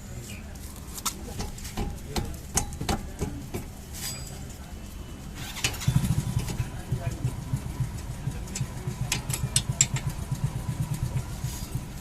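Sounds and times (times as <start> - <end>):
sharp clicks and knocks: 1.0 - 3.8, 6.3 - 11.9
vehicle engine running: 5.4 - 12.0.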